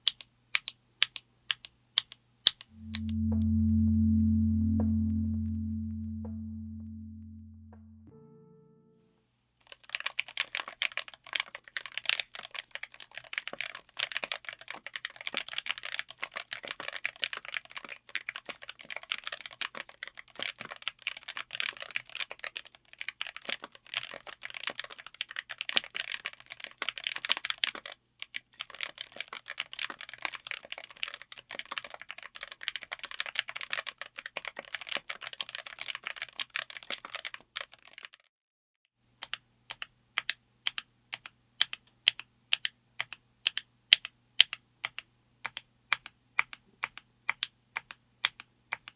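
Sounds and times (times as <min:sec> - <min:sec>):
typing on mechanical keyboard: 0:09.7 - 0:38.3, 0:39.2 - 0:48.9.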